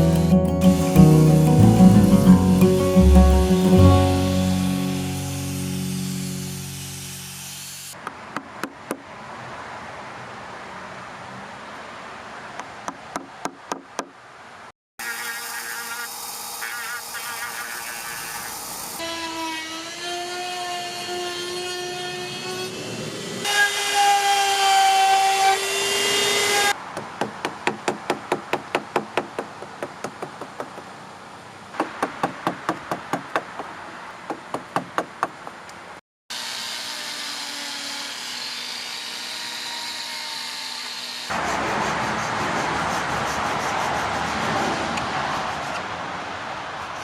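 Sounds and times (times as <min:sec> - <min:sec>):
power tool motor running: 0:04.0 - 0:08.0.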